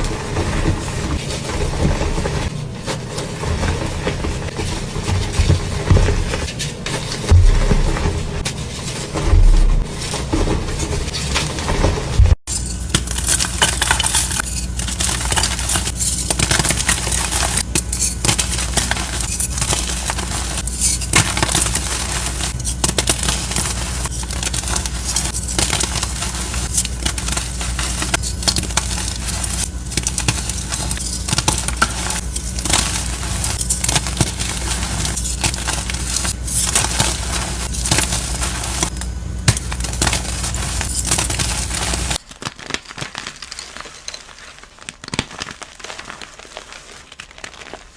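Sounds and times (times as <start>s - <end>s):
low hum: 0.0s - 42.2s
dry material crunching: 0.0s - 47.9s.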